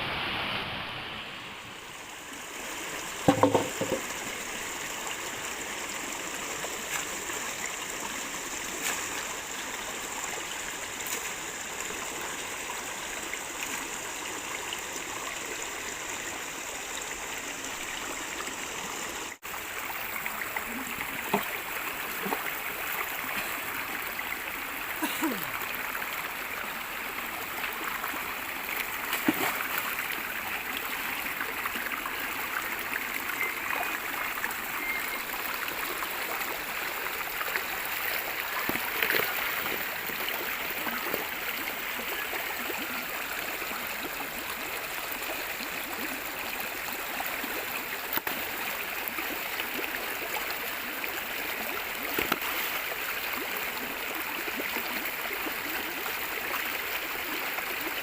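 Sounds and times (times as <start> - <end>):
stream flowing: 0.0 - 58.0
brief knocks: 3.3 - 4.1.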